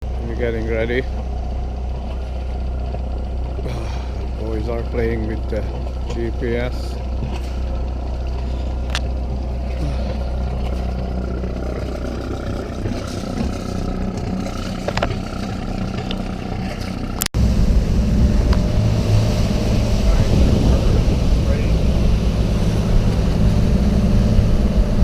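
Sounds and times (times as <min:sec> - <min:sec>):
boat engine humming: 0:00.0 - 0:25.0
rushing noise: 0:17.4 - 0:25.0.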